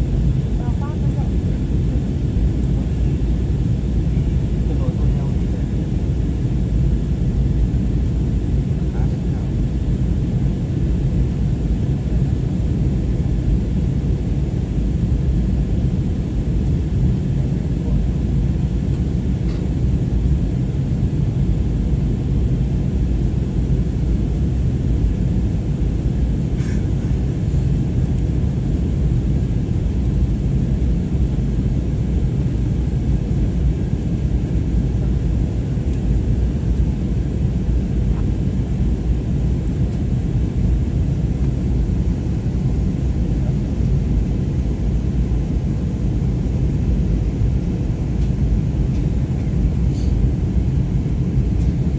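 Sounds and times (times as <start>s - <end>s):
airliner cabin engine rumble: 0.0s - 51.9s.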